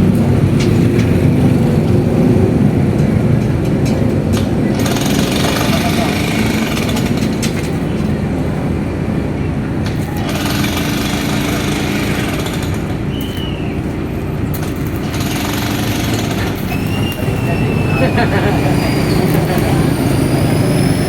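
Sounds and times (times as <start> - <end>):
welding arc crackling: 9.8 - 21.0.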